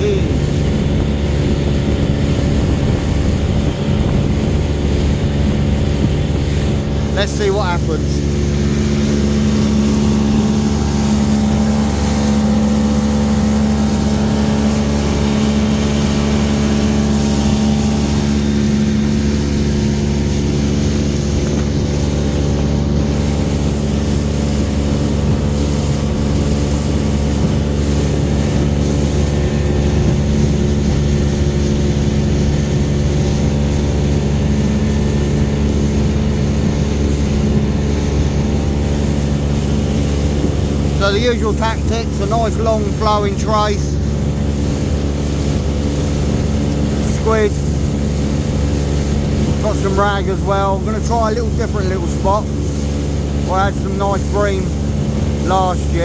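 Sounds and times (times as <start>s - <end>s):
boat engine humming: 0.0s - 56.0s
wind and water rushing: 0.0s - 56.0s.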